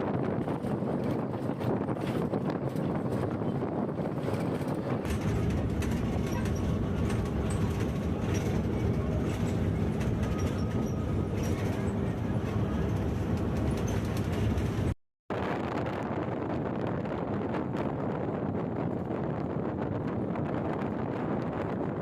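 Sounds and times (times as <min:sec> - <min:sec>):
vehicle road noise: 0:00.0 - 0:15.0
wind on microphone: 0:00.0 - 0:22.0.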